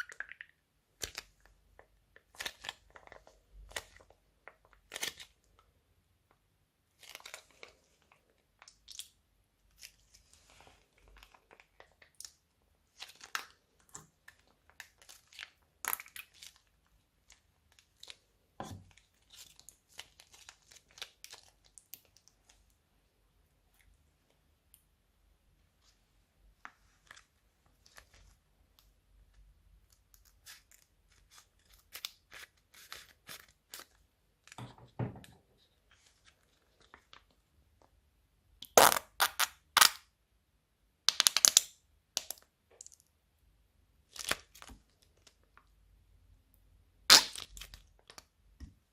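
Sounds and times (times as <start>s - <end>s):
slime squishing with sticky crackles: 0.0s - 25.0s.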